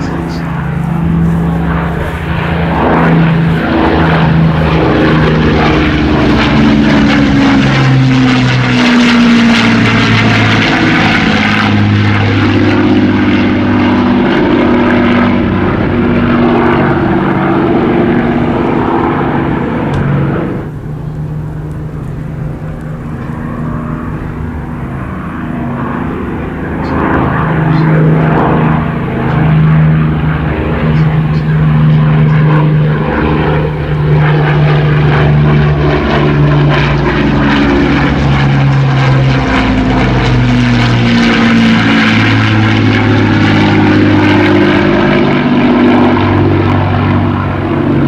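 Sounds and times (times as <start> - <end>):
propeller aircraft engine drone: 0.0 - 48.0.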